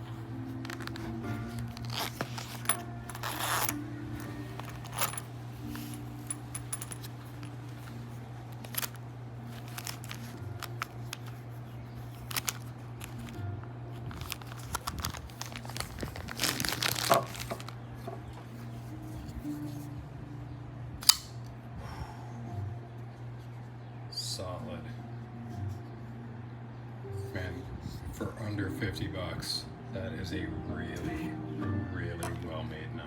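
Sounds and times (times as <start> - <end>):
rustling: 0.5 - 19.7.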